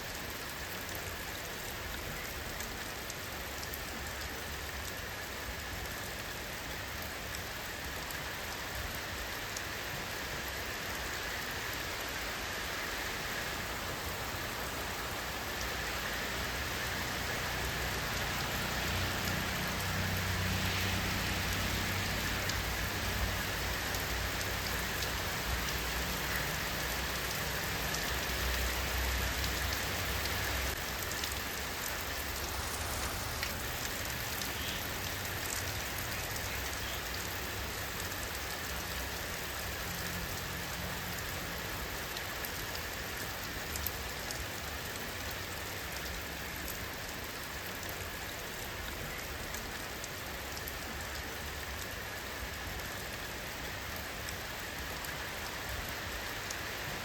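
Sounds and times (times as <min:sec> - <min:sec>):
rain hissing: 0:00.0 - 0:57.0
raindrops ticking: 0:17.5 - 0:57.0.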